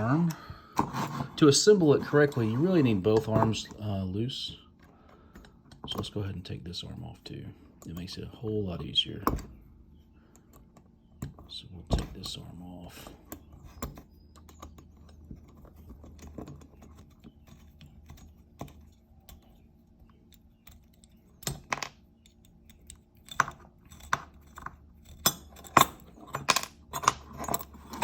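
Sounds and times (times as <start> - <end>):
small metal parts clinking: 10.3 - 28.0.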